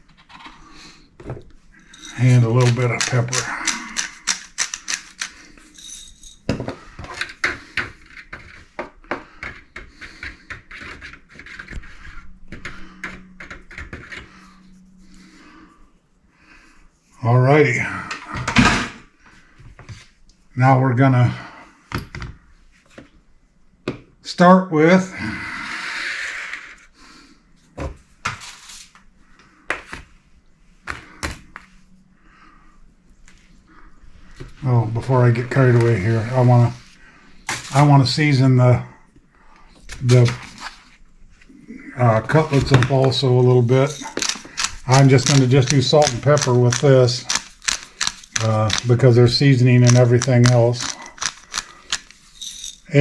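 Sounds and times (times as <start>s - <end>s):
utensil scraping a bowl: 9.7s - 15.1s.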